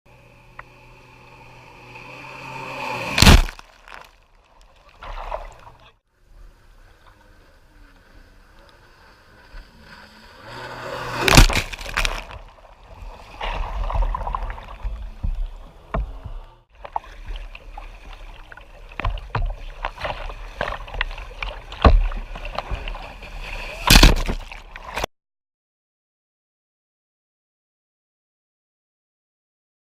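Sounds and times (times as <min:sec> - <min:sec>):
jet ski engine hum: 0:00.1 - 0:03.2, 0:05.7 - 0:23.8
water sloshing and splashing: 0:03.2 - 0:06.0, 0:10.6 - 0:25.1.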